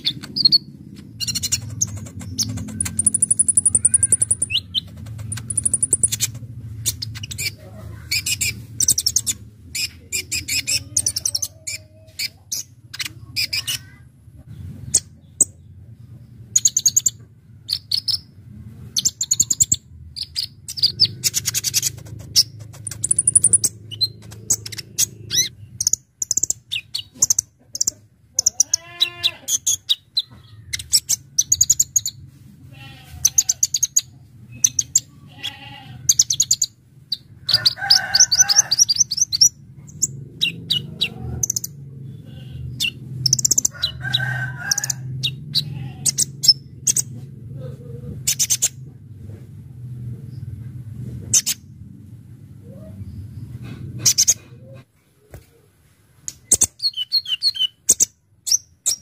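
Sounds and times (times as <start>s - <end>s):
steady low hum: 0.0s - 13.2s, 14.0s - 56.4s
bird chirps and trills: 0.0s - 14.0s, 16.4s - 18.4s, 19.0s - 32.2s, 32.9s - 47.2s, 48.2s - 48.8s, 56.4s - 59.0s.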